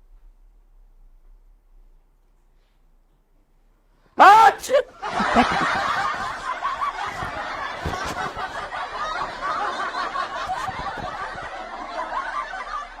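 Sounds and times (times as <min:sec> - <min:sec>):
snickering and chuckling: 0:04.6 - 0:13.0.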